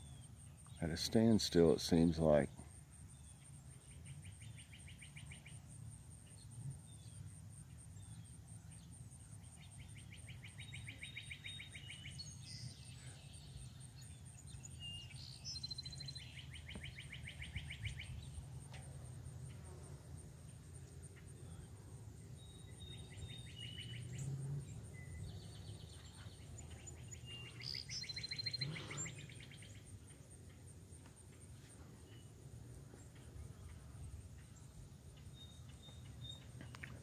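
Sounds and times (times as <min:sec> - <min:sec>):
bird chirps: 0:03.1 - 0:18.7, 0:20.5 - 0:30.7, 0:32.0 - 0:37.0
songbird trilling: 0:09.6 - 0:18.4, 0:22.3 - 0:30.2.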